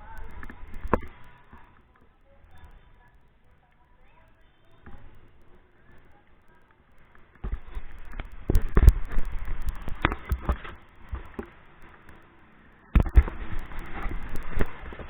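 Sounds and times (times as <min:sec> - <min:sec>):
irregular knocks and thumps: 0:07.4 - 0:11.6.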